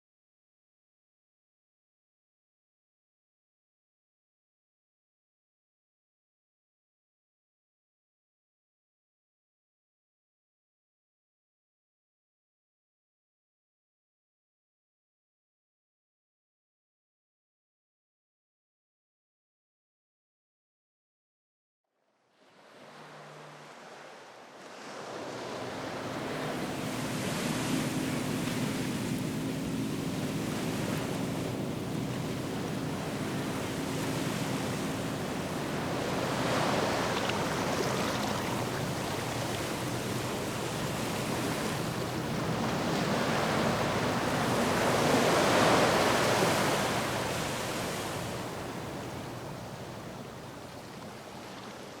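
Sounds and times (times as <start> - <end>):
wind: 22.1 - 52.0
ocean waves breaking: 22.3 - 52.0.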